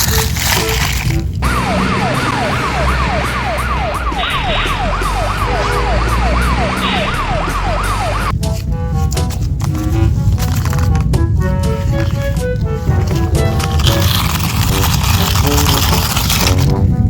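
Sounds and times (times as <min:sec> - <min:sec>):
short musical notes: 0:01.4 - 0:08.3
siren sweeping high and low: 0:01.4 - 0:08.3.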